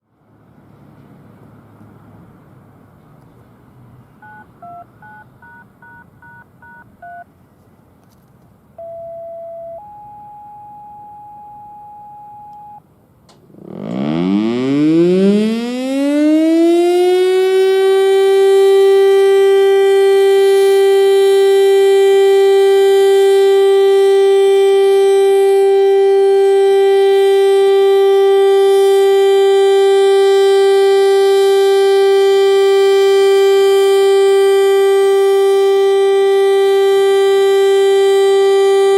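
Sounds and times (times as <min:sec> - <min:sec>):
touch-tone beeps: 0:04.2 - 0:07.2, 0:08.8 - 0:12.8
warning siren winding up: 0:09.8 - 0:38.9.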